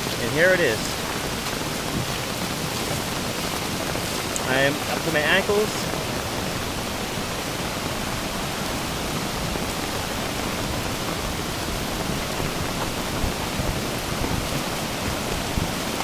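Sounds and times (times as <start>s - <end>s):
flooded river rushing: 0.0s - 16.0s.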